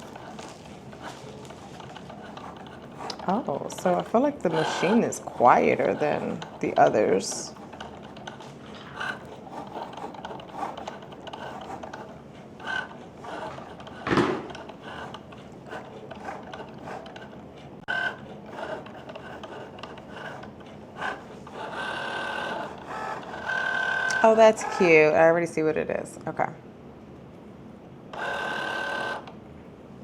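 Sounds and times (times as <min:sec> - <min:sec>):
cutting machine motors whirring: 0:00.0 - 0:25.3, 0:28.1 - 0:29.4
machine knock: 0:13.4 - 0:14.8.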